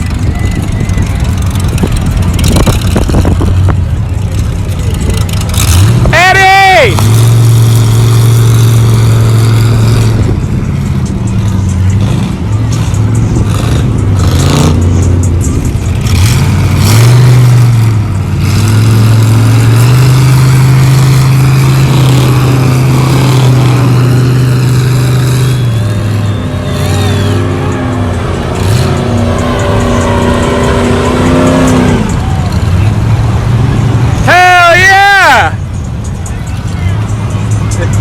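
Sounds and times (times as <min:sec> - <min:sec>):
truck engine revving: 0:00.0 - 0:38.0.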